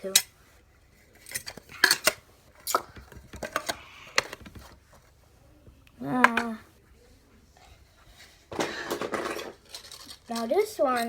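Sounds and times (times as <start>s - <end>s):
fidget spinner clicks and clinks: 9.5s - 11.0s.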